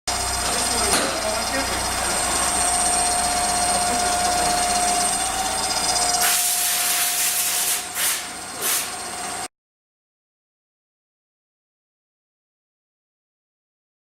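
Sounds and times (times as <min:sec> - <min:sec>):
machine high whine: 0:00.1 - 0:09.5
loud hiss: 0:06.2 - 0:09.0.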